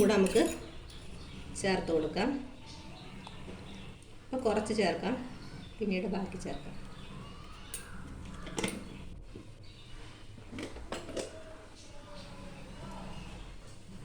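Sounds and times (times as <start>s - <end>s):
metal utensils clinking on a pot: 0.0s - 1.3s.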